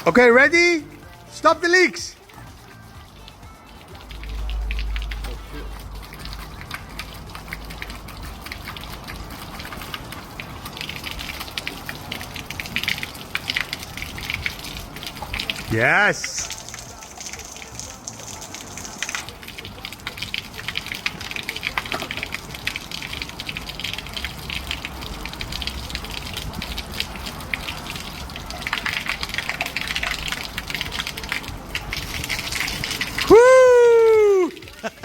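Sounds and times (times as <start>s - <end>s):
water gushing from pipes: 0.0s - 35.0s.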